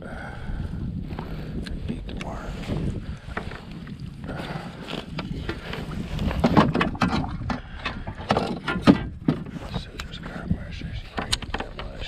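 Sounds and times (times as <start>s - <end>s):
wind buffeting microphone: 0.0s - 12.0s
irregular clicks and knocks: 5.2s - 10.1s, 11.1s - 12.0s.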